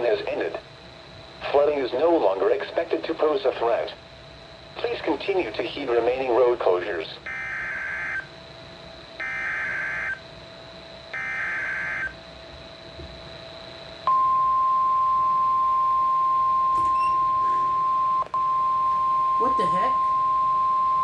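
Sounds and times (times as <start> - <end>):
shrill alarm tone: 7.3 - 8.3, 9.2 - 10.3, 11.1 - 12.2, 16.0 - 20.3
buzzy digital data bursts: 11.2 - 12.2.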